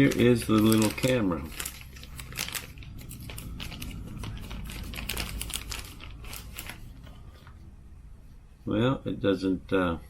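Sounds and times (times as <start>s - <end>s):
packaging clicks and crinkles: 0.0s - 7.3s.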